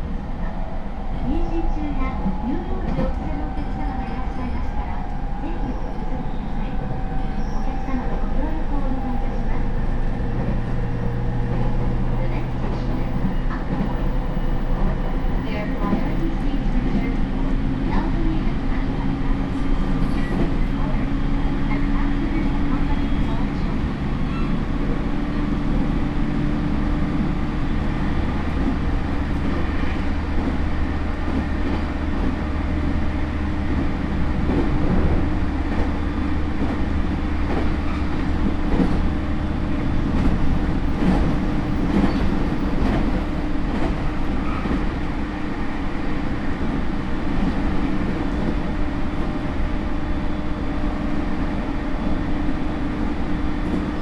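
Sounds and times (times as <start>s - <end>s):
train wheels rumbling on rails: 0.0s - 54.0s
rail-joint clacks: 39.8s - 45.1s.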